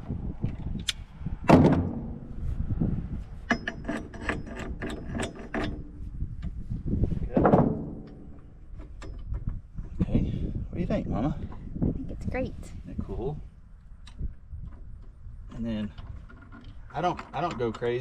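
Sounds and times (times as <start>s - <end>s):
heavier metal knocks: 1.5s - 2.3s, 7.3s - 9.6s.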